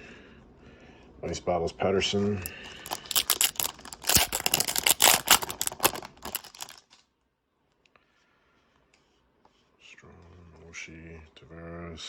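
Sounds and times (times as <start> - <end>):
trading cards shuffled and flipped: 2.5 - 6.8.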